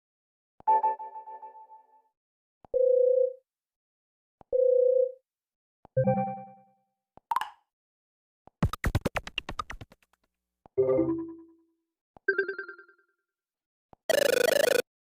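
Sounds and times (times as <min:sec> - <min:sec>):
harsh buzzy phone tone: 0:14.1 - 0:14.8.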